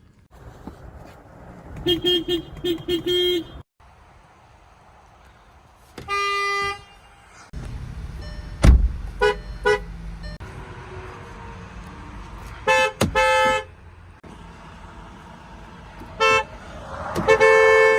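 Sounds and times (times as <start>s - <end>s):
rumble of passing traffic: 0.0s - 17.9s
car horns honking: 1.8s - 3.7s, 6.0s - 7.3s, 8.3s - 10.4s, 12.6s - 13.8s, 16.1s - 16.5s, 17.1s - 17.9s
sharp thump: 8.6s - 9.0s.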